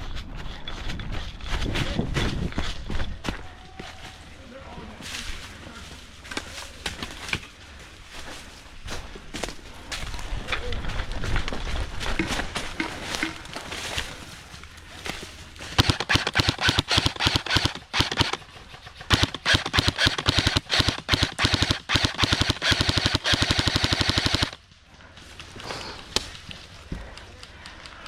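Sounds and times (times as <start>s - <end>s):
airsoft guns firing: 15.8s - 24.6s.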